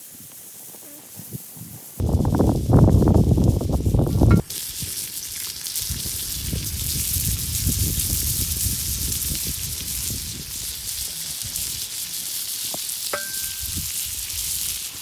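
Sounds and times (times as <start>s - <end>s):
steak sizzling in a pan: 0.0s - 15.0s
high ringing tone: 13.2s - 13.7s.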